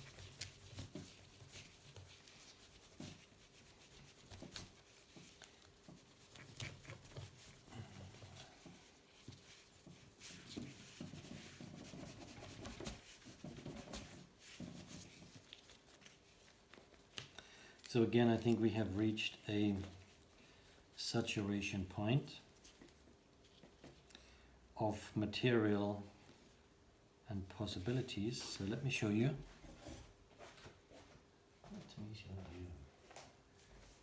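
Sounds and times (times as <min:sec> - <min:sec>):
cloth rubbing on toy car: 0:00.0 - 0:17.0.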